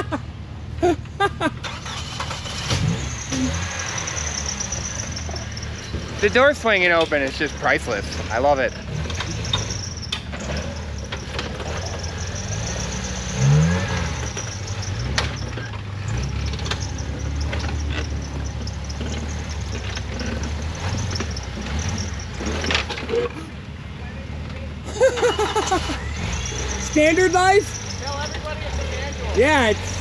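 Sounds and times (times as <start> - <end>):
off-road vehicle engine: 0.0 - 30.0.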